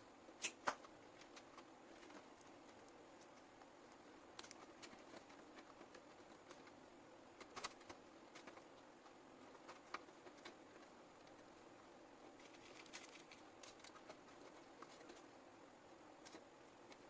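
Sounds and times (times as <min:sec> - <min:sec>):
low steady hum: 0:00.0 - 0:17.0.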